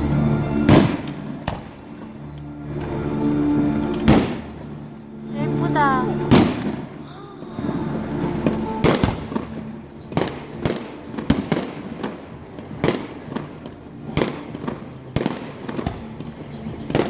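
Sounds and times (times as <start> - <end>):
fireworks bangs echoing: 10.2 - 13.6.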